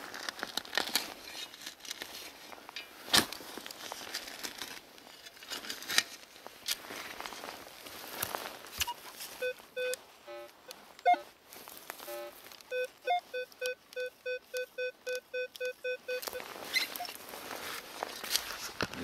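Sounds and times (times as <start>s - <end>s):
metal detector beeping: 8.8s - 11.4s, 12.0s - 17.2s.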